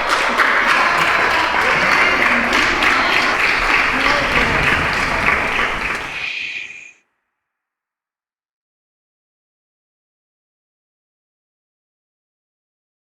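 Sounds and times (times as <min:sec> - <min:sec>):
crowd clapping: 0:00.0 - 0:06.9
voices: 0:00.0 - 0:06.9.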